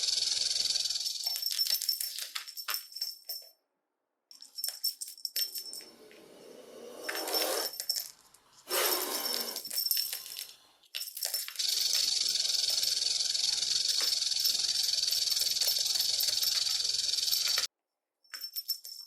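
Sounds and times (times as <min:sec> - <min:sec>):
rattlesnake rattle buzzing: 0:00.0 - 0:01.3, 0:11.6 - 0:17.7
snake hissing: 0:06.2 - 0:07.8, 0:08.6 - 0:09.6.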